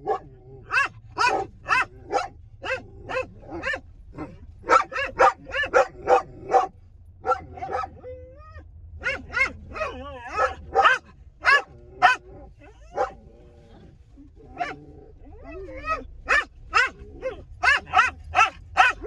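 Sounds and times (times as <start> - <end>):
dog barking: 0.0 - 8.2, 9.0 - 13.3, 14.4 - 19.0
low car rumble: 0.0 - 19.0
dog whining: 7.4 - 19.0.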